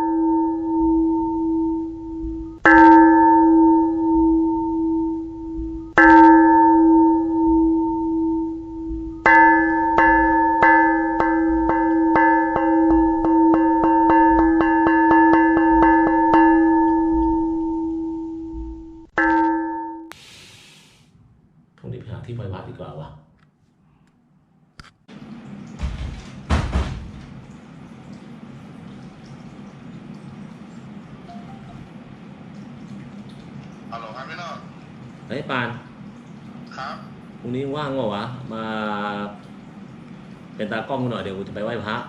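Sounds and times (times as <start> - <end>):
large metal bell ringing: 0.0 - 18.6.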